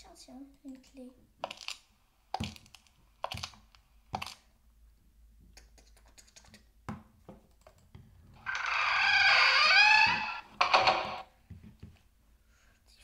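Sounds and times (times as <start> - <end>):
plastic toys clicking: 2.4 - 4.4.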